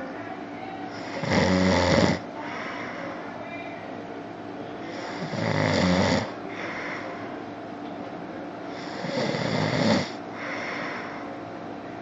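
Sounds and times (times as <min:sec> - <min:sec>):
soft breathing: 0:02.3 - 0:03.4, 0:06.4 - 0:07.4, 0:10.1 - 0:11.4
loud low snore: 0:08.8 - 0:10.2.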